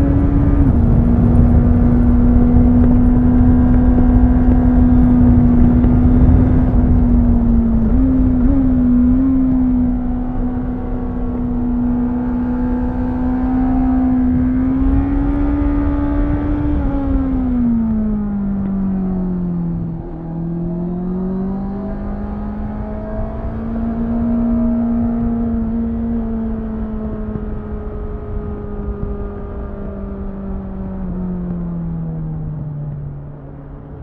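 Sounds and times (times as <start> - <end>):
motorcycle engine revving: 0.0 - 34.0.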